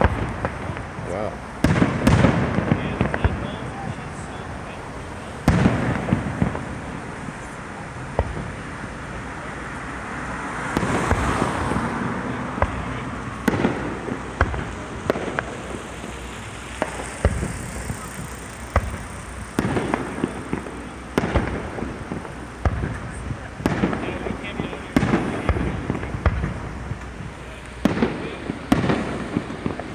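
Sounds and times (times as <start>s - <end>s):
firework shells bursting: 0.0s - 29.9s
fireworks crackling hiss: 0.0s - 29.9s.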